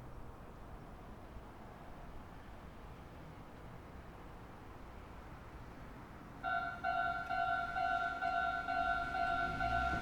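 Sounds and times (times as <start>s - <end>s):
level-crossing alarm ringing: 6.4s - 10.0s.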